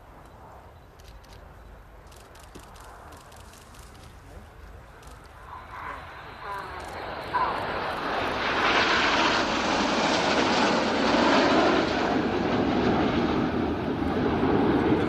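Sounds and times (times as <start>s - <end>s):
jets flying past: 5.2s - 15.0s.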